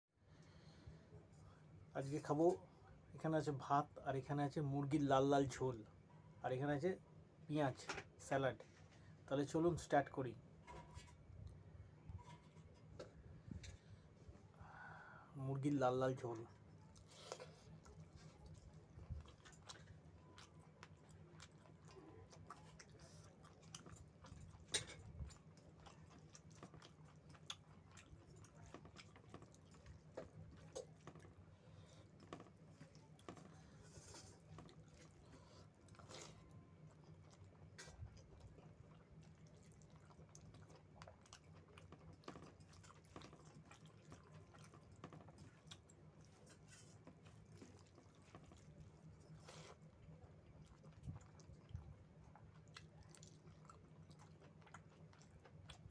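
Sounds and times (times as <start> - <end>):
person chewing food: 16.2 - 55.9.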